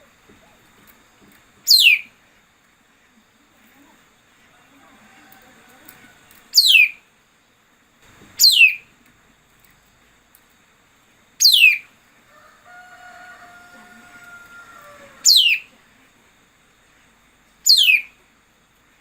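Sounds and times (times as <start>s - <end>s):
faint steady tone: 1.7s - 19.0s.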